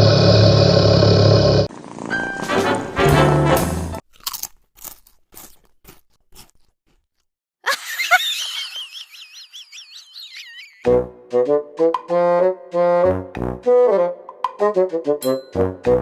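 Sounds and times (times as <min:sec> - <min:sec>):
sharp crunches: 0:04.0 - 0:07.3.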